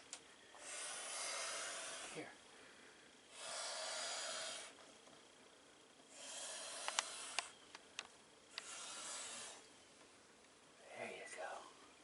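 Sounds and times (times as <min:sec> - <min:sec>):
snake hissing: 0:00.6 - 0:02.4, 0:03.3 - 0:04.8, 0:06.1 - 0:07.6, 0:08.5 - 0:09.7.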